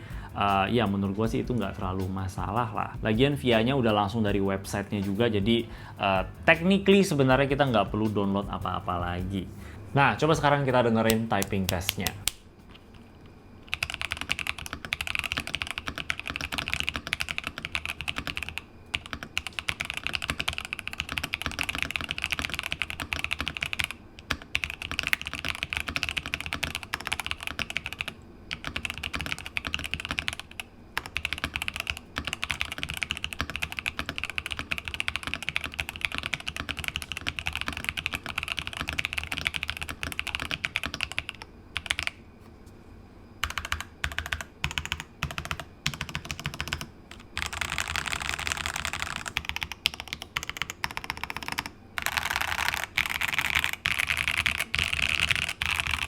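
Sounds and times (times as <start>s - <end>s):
mechanical keyboard typing: 11.0s - 12.4s, 13.7s - 42.2s, 43.4s - 56.0s.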